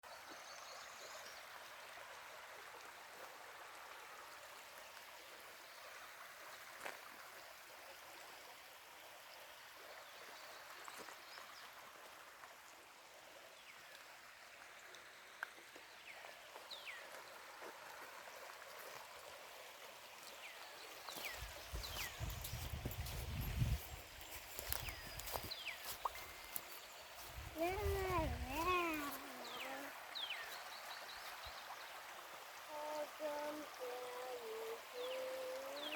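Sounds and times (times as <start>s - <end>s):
stream rushing: 14.0s - 35.9s.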